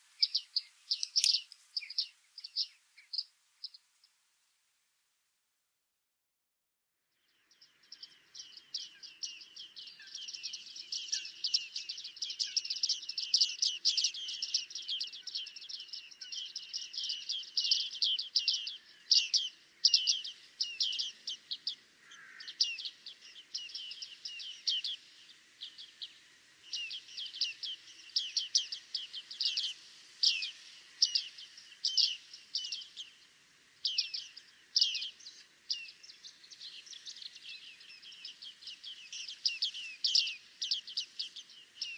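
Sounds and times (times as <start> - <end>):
birds giving high ping calls: 0.0 - 3.8.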